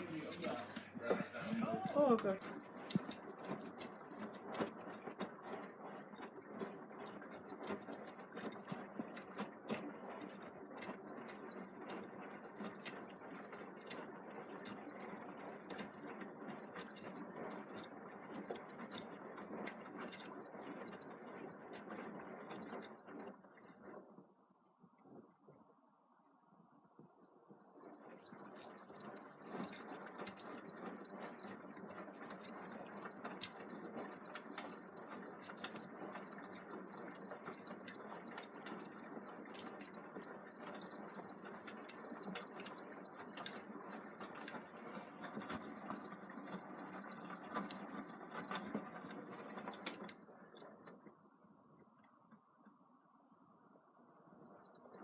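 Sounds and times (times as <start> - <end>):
washing machine churning laundry: 0.0 - 55.0.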